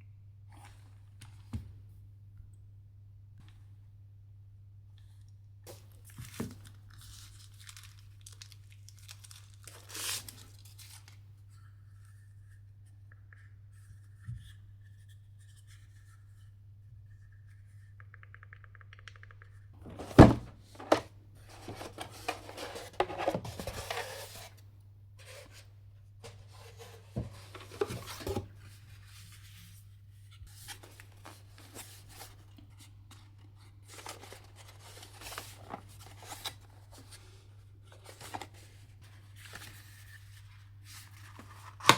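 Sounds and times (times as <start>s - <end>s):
packaging crinkling and tearing: 5.7s - 11.2s.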